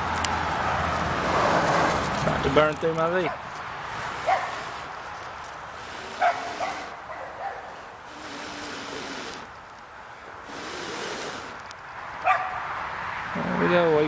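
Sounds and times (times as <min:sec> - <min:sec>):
breaths blown into tinder: 0:08.0 - 0:09.5, 0:10.4 - 0:11.6.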